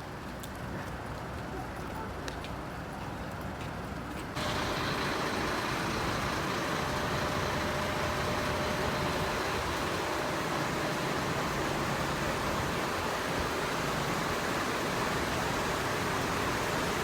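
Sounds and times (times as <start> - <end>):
fire truck engines running: 2.6 - 17.0
loud steady rushing noise: 4.4 - 17.0.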